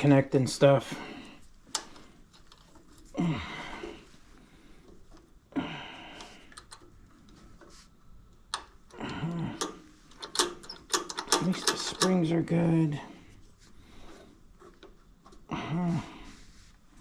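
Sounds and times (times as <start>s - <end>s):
person grunting with effort: 3.1s - 4.0s, 9.0s - 9.8s, 15.5s - 16.3s
sharp metallic clicks: 9.6s - 12.3s.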